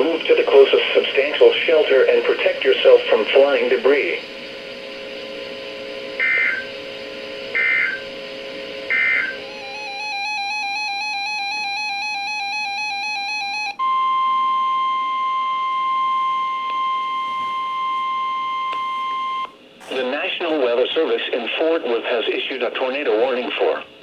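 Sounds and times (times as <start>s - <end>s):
steady alert tone: 6.2s - 6.7s, 7.6s - 8.0s, 8.9s - 11.1s
repeating electronic beeping: 6.2s - 6.8s, 7.6s - 8.0s, 8.9s - 12.1s
screeching two-tone data bursts: 6.2s - 6.8s, 7.5s - 8.1s, 8.9s - 12.2s.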